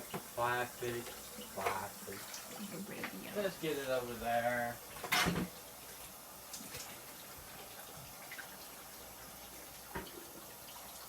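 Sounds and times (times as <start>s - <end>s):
faint steady hiss: 0.0s - 11.0s.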